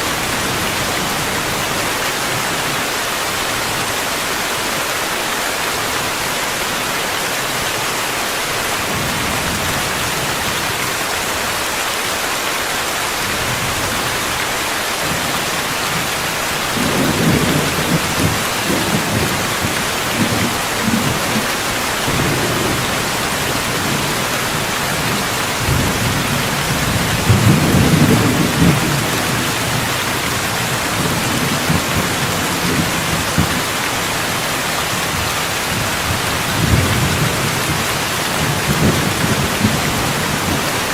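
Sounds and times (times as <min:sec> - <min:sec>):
heavy rain hissing: 0:00.0 - 0:40.9
thunder rumbling: 0:16.6 - 0:40.9.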